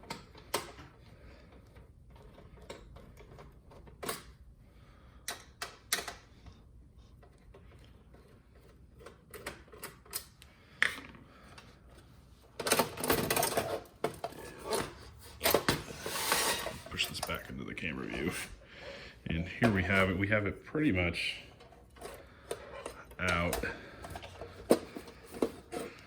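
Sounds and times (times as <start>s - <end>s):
rattling and scraping: 11.4s - 18.6s, 21.4s - 26.0s.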